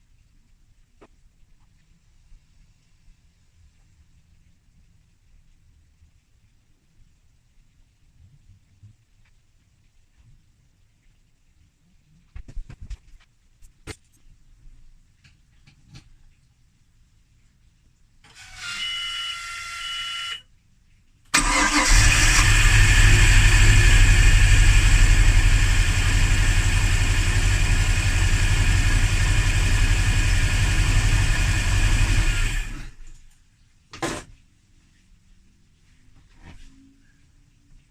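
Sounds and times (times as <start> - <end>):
steady whine at key-on: 21.4 - 33.1
car engine starting and running: 21.4 - 33.2.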